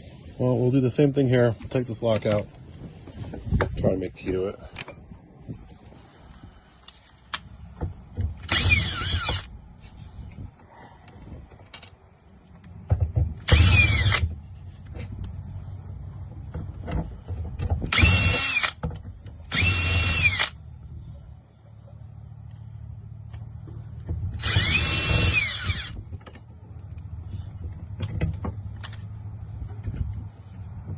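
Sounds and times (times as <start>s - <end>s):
power drill whine: 8.5s - 9.5s, 13.5s - 14.3s, 17.9s - 18.8s, 19.5s - 20.6s, 24.4s - 26.0s
handling clicks and knocks: 25.9s - 30.9s.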